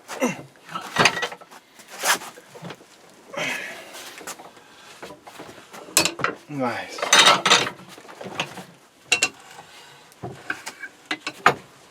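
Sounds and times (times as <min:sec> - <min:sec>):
hand tools clanking on metal: 0:00.7 - 0:01.4, 0:05.3 - 0:09.6, 0:10.3 - 0:11.7.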